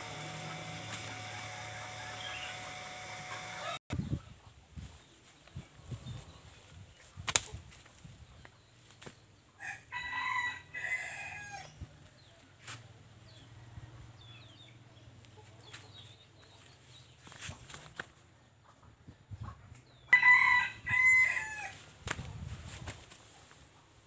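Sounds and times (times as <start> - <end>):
rooster crowing: 0.1 - 3.8, 9.6 - 11.8, 20.1 - 21.8.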